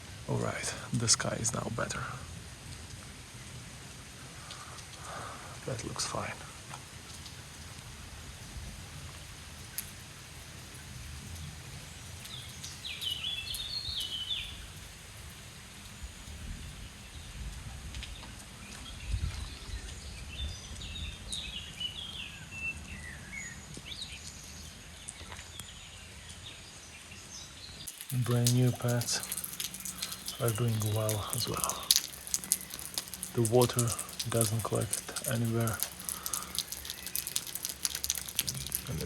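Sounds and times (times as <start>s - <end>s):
songbird singing: 11.8s - 17.5s, 18.1s - 39.0s.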